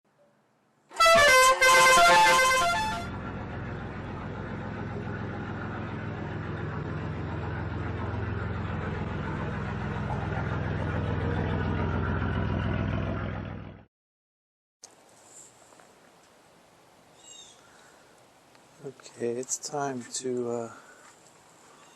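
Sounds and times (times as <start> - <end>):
multi-tone truck horn blaring: 0.9 - 4.7
truck engine running: 1.0 - 13.8.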